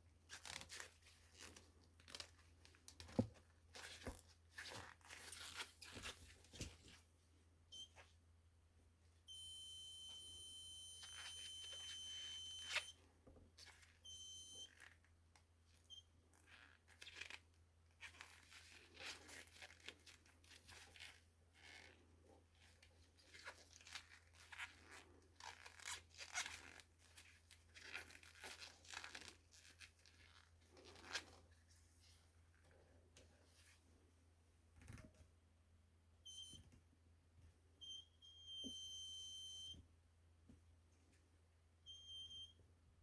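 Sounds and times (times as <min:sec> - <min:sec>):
hands rustling and scraping cord: 0:00.3 - 0:07.1, 0:18.0 - 0:33.9
buzzer high beep: 0:07.7 - 0:08.0, 0:09.3 - 0:13.0, 0:14.1 - 0:14.7, 0:36.3 - 0:36.6, 0:37.8 - 0:39.8, 0:41.8 - 0:42.6.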